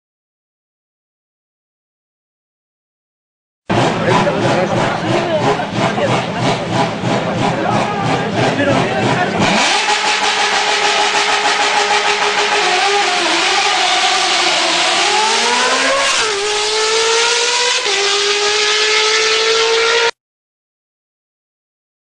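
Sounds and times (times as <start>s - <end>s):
car engine at high revs: 3.7s - 20.2s.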